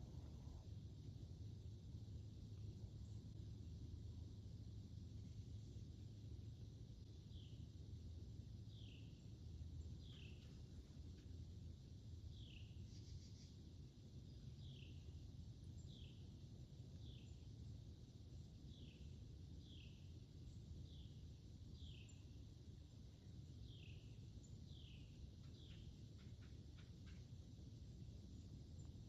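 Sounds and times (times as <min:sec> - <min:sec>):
low background rumble: 0:00.0 - 0:29.0
songbird calling: 0:08.6 - 0:09.2, 0:09.8 - 0:10.7, 0:12.3 - 0:13.6, 0:14.3 - 0:15.2, 0:15.8 - 0:16.3, 0:17.0 - 0:17.4, 0:18.7 - 0:20.1, 0:20.9 - 0:22.3, 0:23.6 - 0:27.4.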